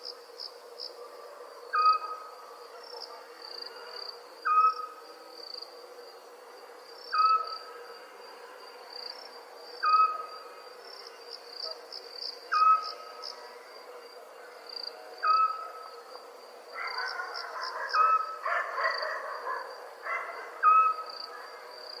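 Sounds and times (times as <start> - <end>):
crickets chirping: 0.0 - 22.0.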